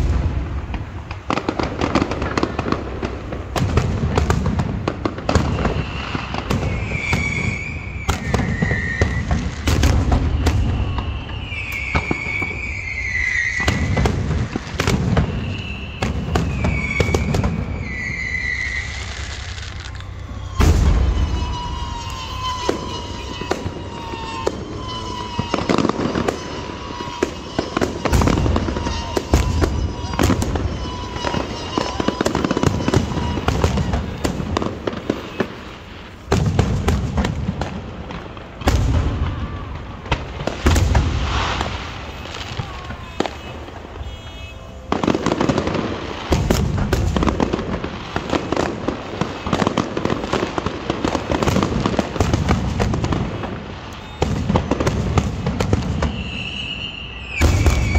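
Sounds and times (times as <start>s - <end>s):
deep firework booms: 0.0s - 57.9s
firework crackling and bangs: 0.0s - 57.9s
falling whistling tone: 5.3s - 34.3s, 53.8s - 54.5s, 56.0s - 57.9s.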